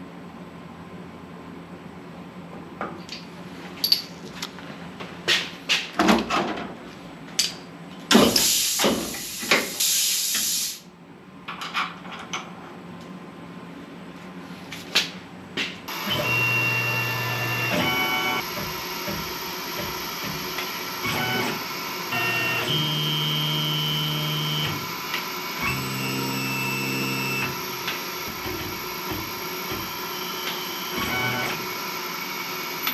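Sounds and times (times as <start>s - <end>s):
knocks and clicks of machine work: 7.4s - 9.8s, 17.6s - 21.6s, 27.4s - 31.6s
hiss: 8.2s - 10.9s
high spindle whine: 15.9s - 32.9s
stepper motors whining: 15.9s - 32.9s.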